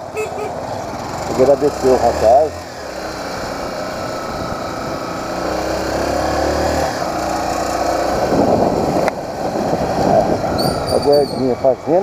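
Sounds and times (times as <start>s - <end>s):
motorcycle engine running: 0.0s - 12.0s
wind rushing over microphone: 4.1s - 5.1s, 5.8s - 12.0s.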